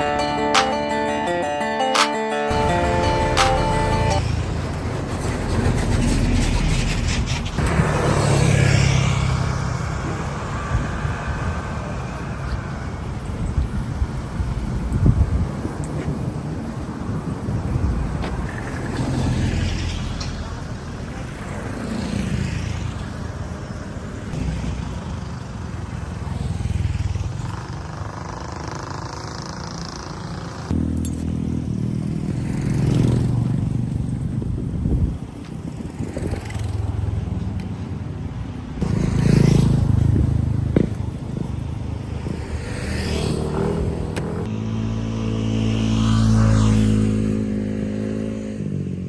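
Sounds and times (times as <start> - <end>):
motorcycle engine running: 25.0 - 37.7.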